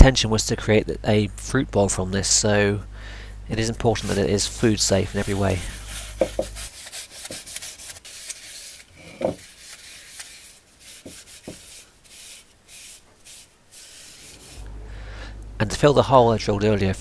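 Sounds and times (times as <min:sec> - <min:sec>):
cloth rubbing wooden bowl: 0:04.0 - 0:14.9.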